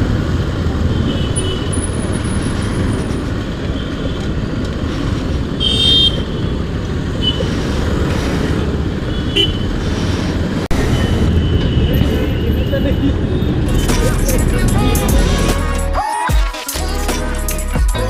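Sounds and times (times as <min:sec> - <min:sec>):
wind and road rumble: 0:00.0 - 0:15.7
vehicle horn toot: 0:05.6 - 0:06.3.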